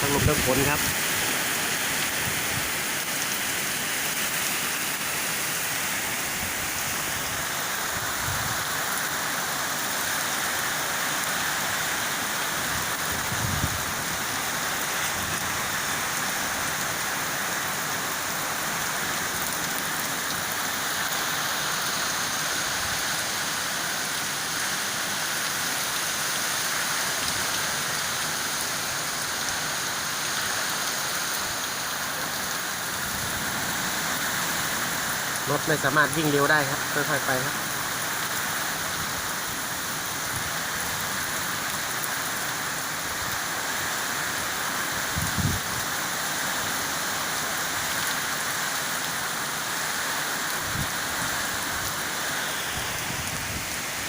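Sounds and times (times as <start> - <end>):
strong wind: 0.0 - 1.3, 6.2 - 8.7, 12.6 - 14.4, 45.0 - 45.9, 50.6 - 54.0
heavy rain pouring: 0.0 - 54.0.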